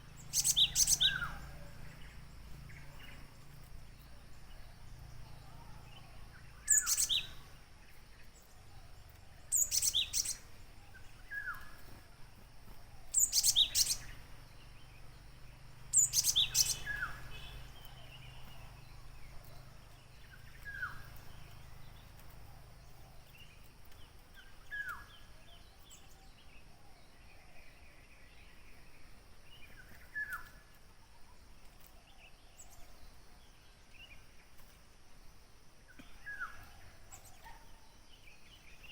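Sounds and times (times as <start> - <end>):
quiet ticking bird notes: 0.0 - 38.9
falling bird chirps: 0.2 - 1.7, 6.6 - 7.4, 9.5 - 12.0, 13.0 - 14.2.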